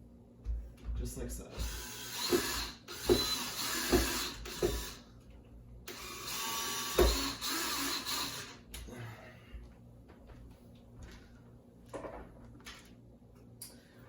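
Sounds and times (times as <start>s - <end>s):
power drill driving screws: 1.6s - 5.1s, 5.9s - 8.6s.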